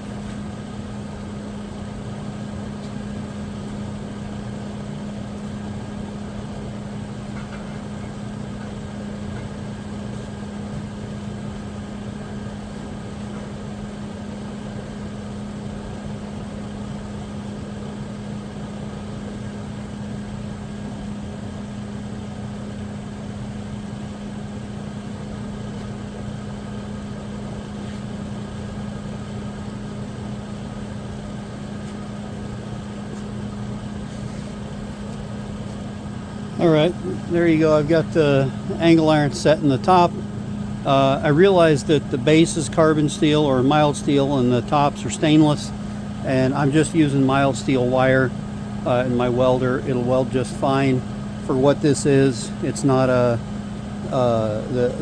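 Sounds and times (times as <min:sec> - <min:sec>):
steady machine hum: 0:00.0 - 0:55.0.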